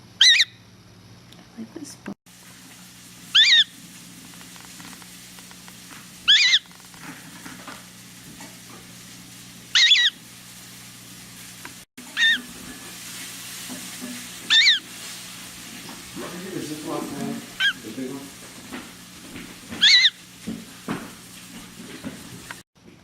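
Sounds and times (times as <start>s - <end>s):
gull chick peeping: 0.2s - 0.6s, 3.4s - 3.7s, 6.3s - 6.7s, 9.8s - 10.2s, 12.2s - 12.5s, 14.5s - 14.8s, 19.8s - 20.2s.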